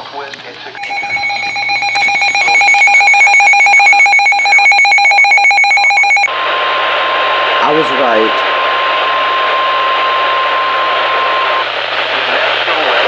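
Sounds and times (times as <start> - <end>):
alarm beeping rapidly: 0.8 - 6.3
steady warning alarm tone: 0.8 - 6.3.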